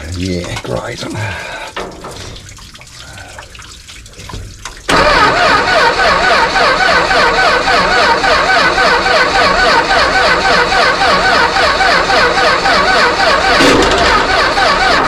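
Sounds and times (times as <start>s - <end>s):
water running from hose: 0.0s - 15.0s
engine running loudly: 4.9s - 15.0s.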